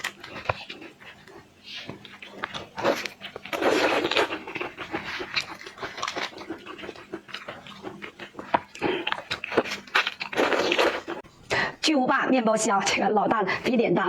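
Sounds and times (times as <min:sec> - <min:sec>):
wet sucking and chewing: 0:00.0 - 0:11.2.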